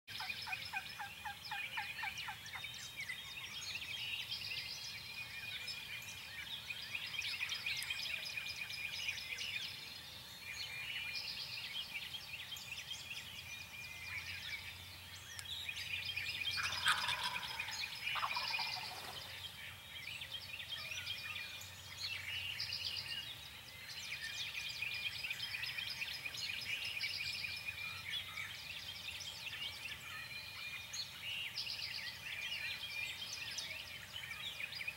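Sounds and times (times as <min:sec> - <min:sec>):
songbirds chirping: 0:00.1 - 0:34.9
turkey gobbling: 0:16.6 - 0:19.3.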